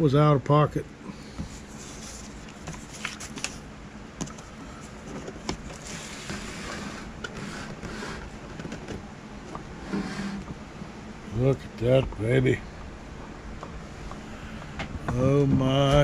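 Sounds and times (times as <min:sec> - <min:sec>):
rustling: 0:01.4 - 0:03.6.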